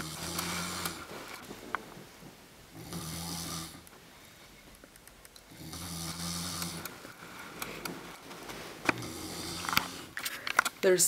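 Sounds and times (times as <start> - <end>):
man snoring heavily: 0.0 - 1.0, 2.7 - 3.8, 5.5 - 6.9, 9.0 - 10.2.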